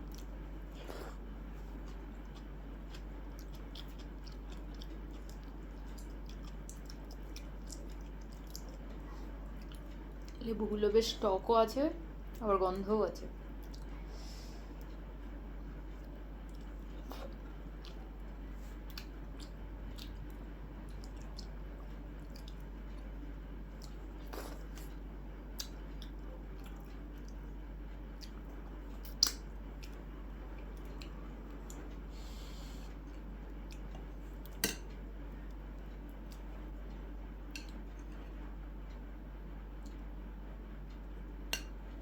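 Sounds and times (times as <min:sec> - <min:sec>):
chewing food: 0:00.0 - 0:10.5, 0:13.4 - 0:14.1, 0:14.7 - 0:39.0
steady low hum: 0:00.0 - 0:42.0.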